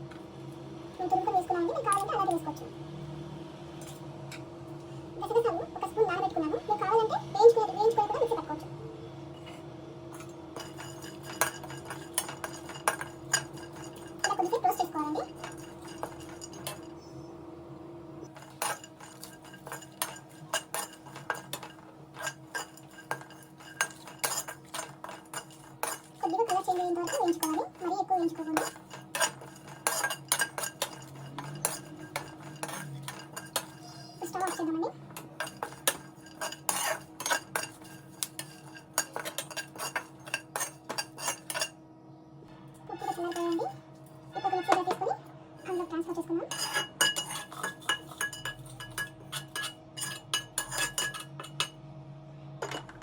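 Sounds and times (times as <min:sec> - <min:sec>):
spatula scraping in a pan: 0:09.3 - 0:17.1, 0:18.2 - 0:41.8, 0:42.9 - 0:45.0, 0:45.6 - 0:51.7.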